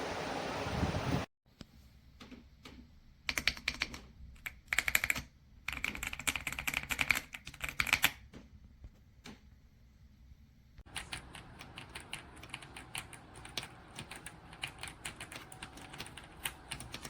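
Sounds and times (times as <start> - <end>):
mechanical keyboard typing: 2.2 - 8.3, 10.9 - 17.0.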